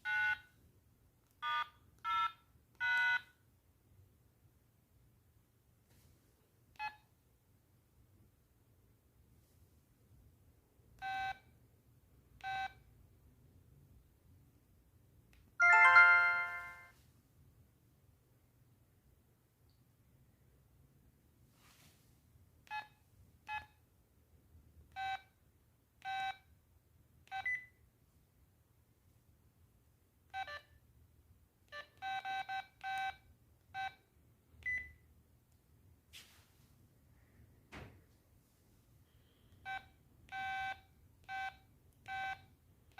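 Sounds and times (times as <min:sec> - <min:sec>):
phone ringtone: 0:15.6 - 0:16.9
phone key beeps: 0:27.3 - 0:27.7, 0:31.8 - 0:33.2, 0:34.6 - 0:35.0, 0:39.7 - 0:42.5
phone key-press beeps: 0:31.8 - 0:33.2.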